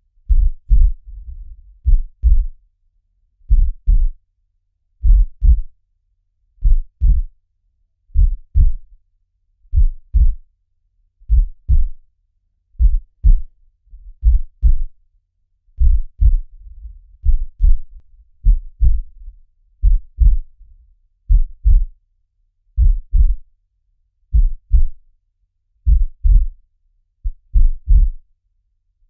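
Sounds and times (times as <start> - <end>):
heartbeat double thumps: 0.3 - 2.6, 3.5 - 4.2, 5.0 - 5.7, 6.6 - 7.3, 8.2 - 8.9, 9.7 - 10.4, 11.2 - 12.0, 12.8 - 15.0, 15.8 - 20.6, 21.3 - 22.0, 22.8 - 23.4, 24.3 - 25.0, 25.9 - 26.6, 27.3 - 28.2.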